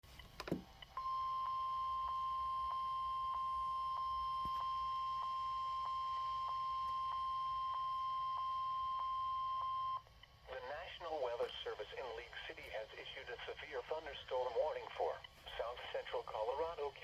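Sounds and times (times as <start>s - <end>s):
steady warning beep tone: 0.9s - 10.1s.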